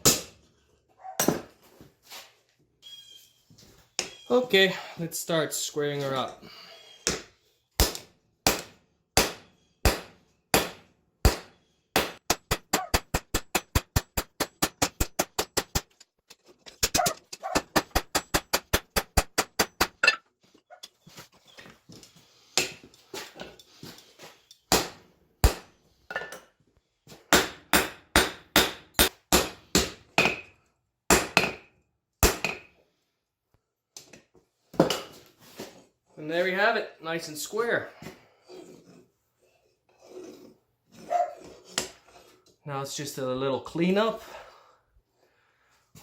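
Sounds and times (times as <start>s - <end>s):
hammer striking hot steel on anvil: 7.8s - 15.6s.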